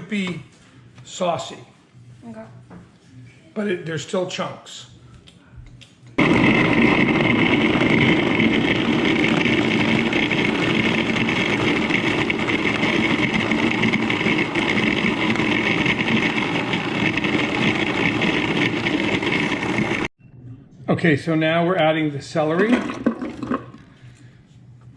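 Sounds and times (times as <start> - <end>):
food processor motor chopping: 6.2 - 20.1.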